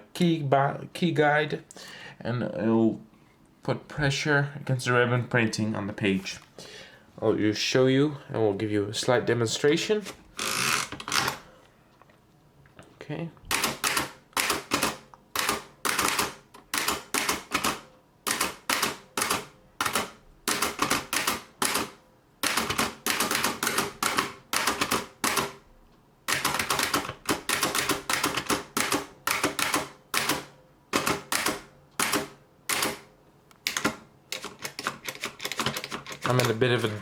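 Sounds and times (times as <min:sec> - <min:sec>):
typewriter keys clacking: 0:13.5 - 0:25.6, 0:26.3 - 0:30.4, 0:33.7 - 0:37.0.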